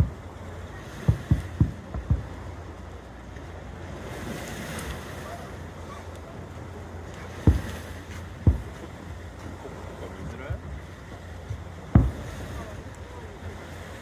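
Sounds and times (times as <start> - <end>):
distant fireworks booming: 0.0 - 2.6, 7.2 - 9.1, 11.5 - 12.8
wind on microphone: 0.0 - 9.9, 10.7 - 14.0.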